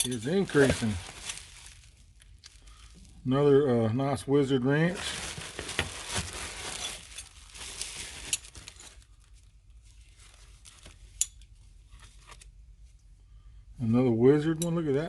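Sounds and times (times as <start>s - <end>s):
packing wrapping crinkling: 0.2s - 3.2s, 4.8s - 11.0s.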